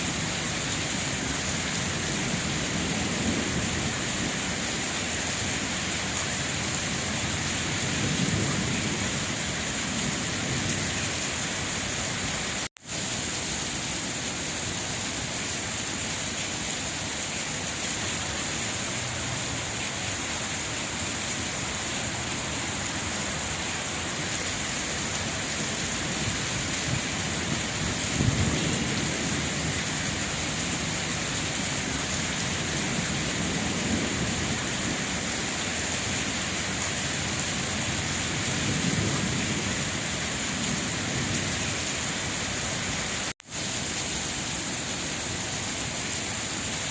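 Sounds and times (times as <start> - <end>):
heavy rain: 0.0 - 46.9
distant thunder rumbling: 26.3 - 30.0.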